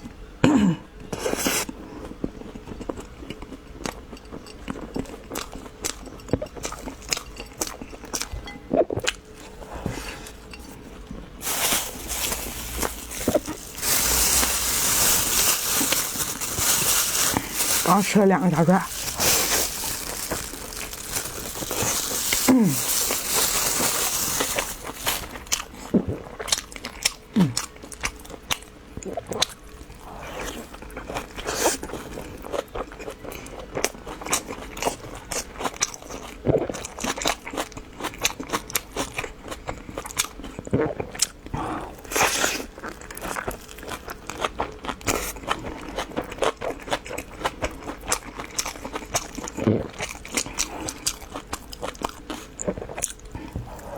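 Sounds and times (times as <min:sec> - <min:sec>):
crunchy bites and chewing: 0:11.8 - 0:28.2.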